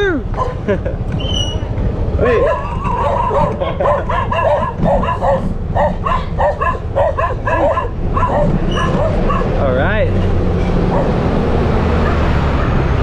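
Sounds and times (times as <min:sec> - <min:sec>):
dog barking and yipping: 0:00.3 - 0:00.6, 0:02.3 - 0:09.6, 0:10.9 - 0:11.2.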